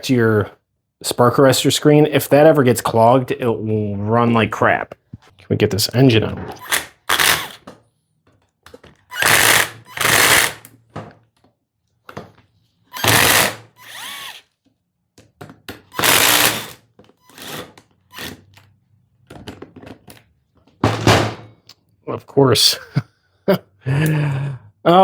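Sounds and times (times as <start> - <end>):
cordless power driver bursts: 6.6 - 7.6, 9.1 - 10.7, 13.0 - 14.4, 15.9 - 18.4.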